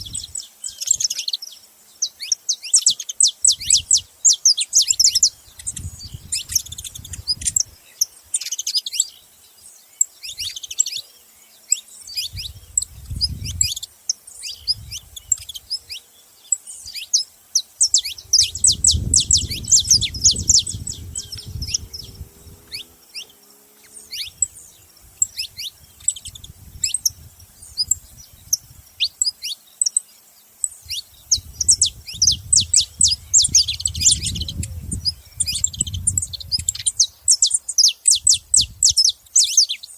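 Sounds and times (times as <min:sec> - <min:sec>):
finches chirping: 0:00.0 - 0:39.9
low rumbling noise: 0:18.2 - 0:23.0.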